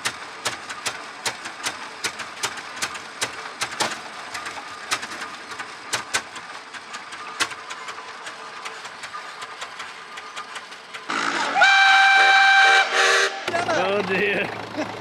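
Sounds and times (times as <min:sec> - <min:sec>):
sharp clicks: 0:00.0 - 0:11.1
loud high whistle: 0:11.1 - 0:13.5.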